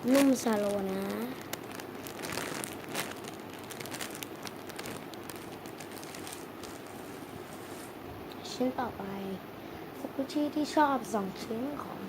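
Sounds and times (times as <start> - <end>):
foam toy crinkling: 0.0 - 8.0.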